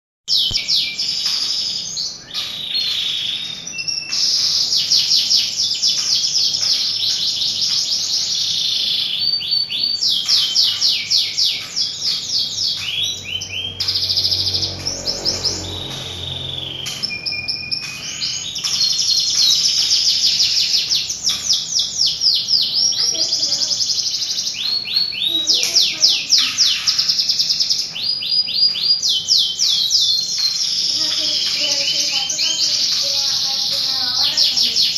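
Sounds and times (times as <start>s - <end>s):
canary singing trills: 0.3s - 34.9s.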